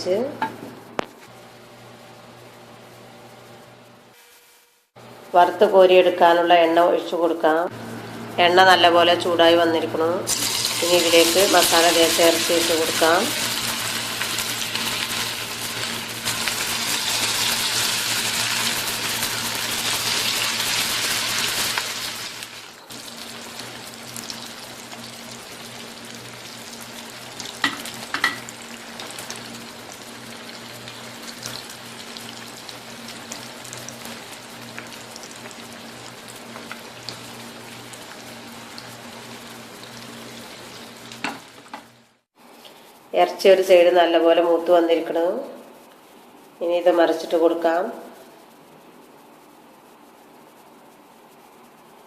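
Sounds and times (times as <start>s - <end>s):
meat deep-frying in oil: 10.3s - 42.0s.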